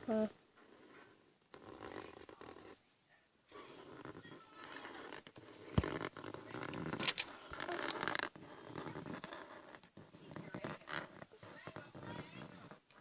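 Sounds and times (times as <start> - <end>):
pen scratching on paper: 0.0 - 2.8, 3.5 - 13.0.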